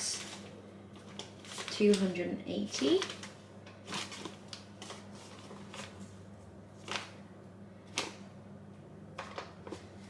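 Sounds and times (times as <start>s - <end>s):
flour rustling: 0.0s - 7.2s
steady low hum: 0.0s - 10.0s.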